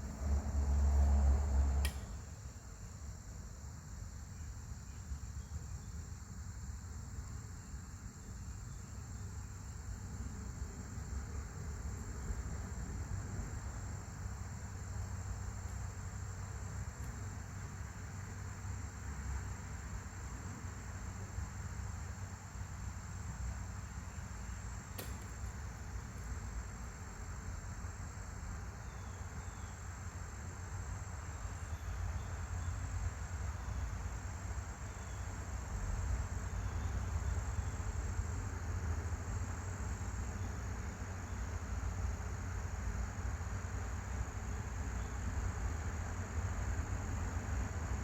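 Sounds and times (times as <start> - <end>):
sharp click: 1.8 - 2.2, 24.9 - 25.4.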